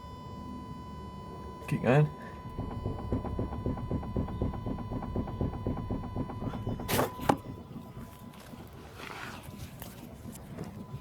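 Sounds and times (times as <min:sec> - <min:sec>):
light knocking from car steering: 0:02.5 - 0:07.5
loud clunk: 0:02.5 - 0:07.6.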